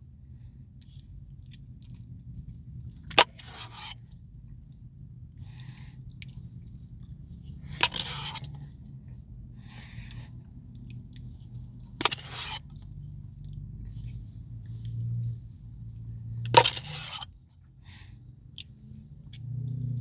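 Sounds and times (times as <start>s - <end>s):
spoon scraping and knocking: 3.2s - 4.0s, 7.8s - 8.5s, 12.0s - 12.6s, 16.5s - 17.2s.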